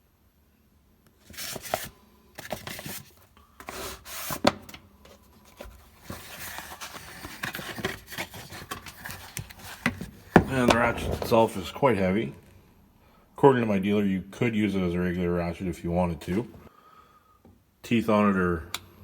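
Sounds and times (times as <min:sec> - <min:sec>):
knocks and clicks: 0:10.4 - 0:11.7.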